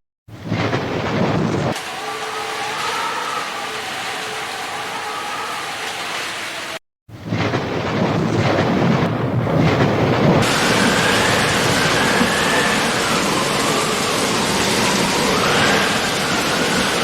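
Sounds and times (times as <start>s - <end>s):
low rumble of thunder: 0.4s - 1.8s, 7.1s - 17.0s
steady rain: 0.6s - 6.8s, 7.4s - 17.0s.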